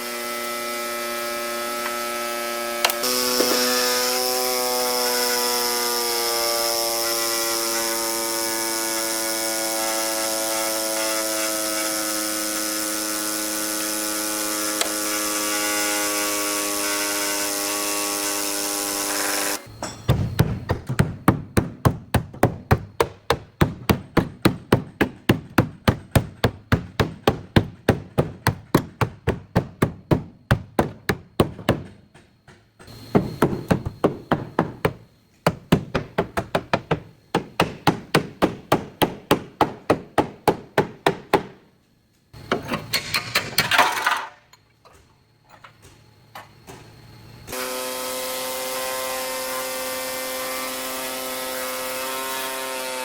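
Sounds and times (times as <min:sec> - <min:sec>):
power tool whirring: 0:00.0 - 0:19.8, 0:47.5 - 0:53.0.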